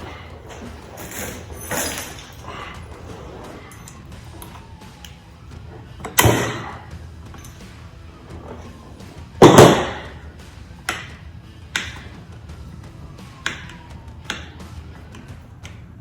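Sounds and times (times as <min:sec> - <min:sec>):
tools clattering on a bench: 0:00.0 - 0:04.7, 0:06.0 - 0:07.7, 0:09.4 - 0:10.2
faint background music: 0:00.0 - 0:16.0.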